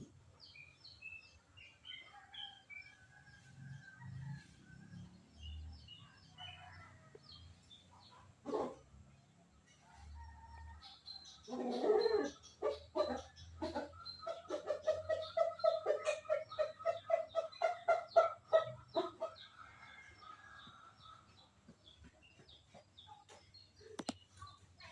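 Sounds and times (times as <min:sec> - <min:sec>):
bird clucking notes: 0:11.5 - 0:19.4.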